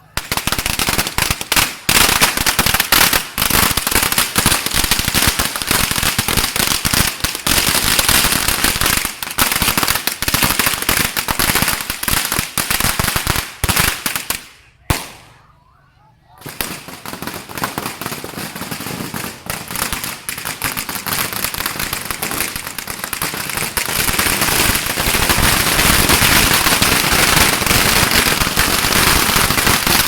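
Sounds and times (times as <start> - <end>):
firecrackers going off: 0.0 - 15.6, 16.3 - 30.0.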